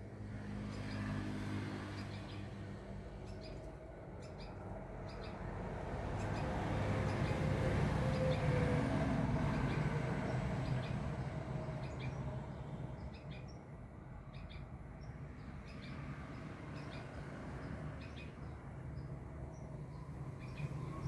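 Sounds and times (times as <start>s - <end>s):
small birds chirping: 3.2s - 5.4s.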